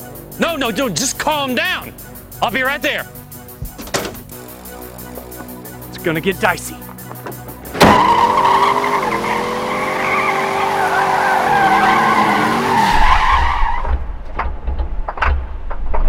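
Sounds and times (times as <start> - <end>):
tyres screeching: 3.6 - 14.0
car engine running hard: 7.6 - 12.9.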